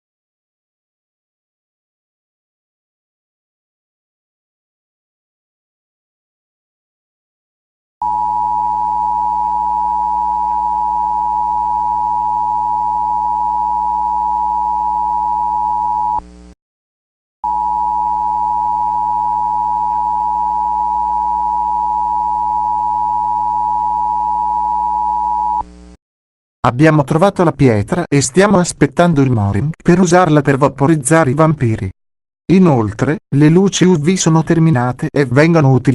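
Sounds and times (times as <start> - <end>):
emergency alert tone: 8.0 - 16.2, 17.4 - 25.6
low hum: 8.0 - 16.5, 17.5 - 25.6.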